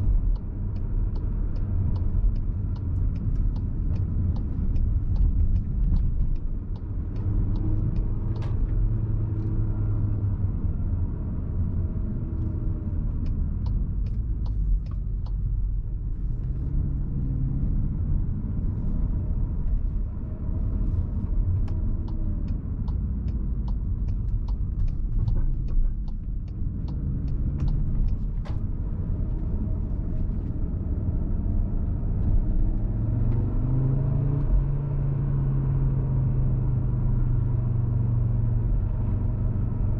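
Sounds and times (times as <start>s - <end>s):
light sharp ticks: 0.0s - 10.6s, 11.7s - 37.4s
car engine accelerating: 0.0s - 39.9s
low road rumble: 0.0s - 39.9s.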